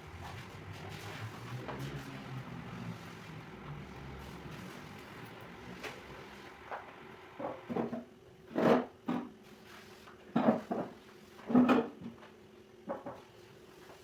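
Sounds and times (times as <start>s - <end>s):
faint steady hum: 0.0s - 8.0s.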